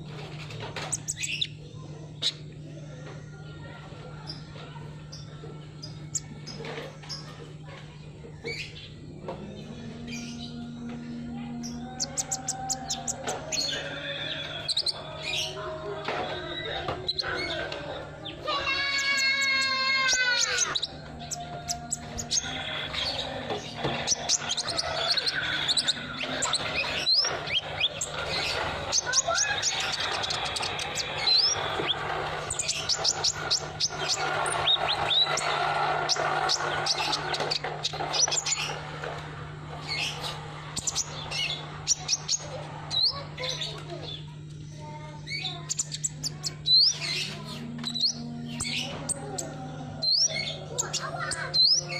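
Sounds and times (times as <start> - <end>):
steady low hum: 0.0 - 51.9
bird chirping and trilling: 0.4 - 2.8, 8.3 - 51.9
harsh bird call: 16.2 - 38.9.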